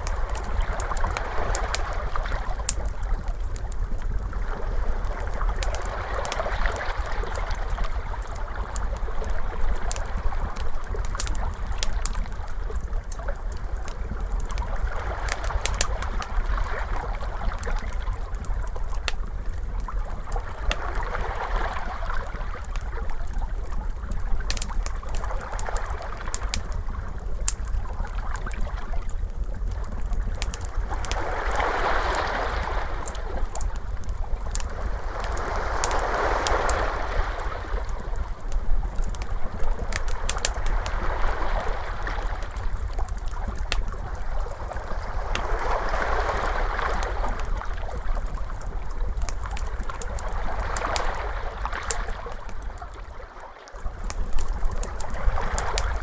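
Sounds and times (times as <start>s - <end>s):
fire crackling and popping: 0.0s - 56.0s
ocean waves washing: 30.6s - 48.8s.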